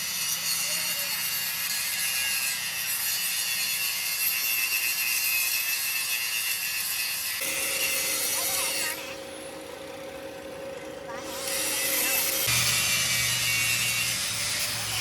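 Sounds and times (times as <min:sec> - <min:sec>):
power tool grinding metal: 0:00.0 - 0:15.0
steady whine: 0:07.4 - 0:15.0.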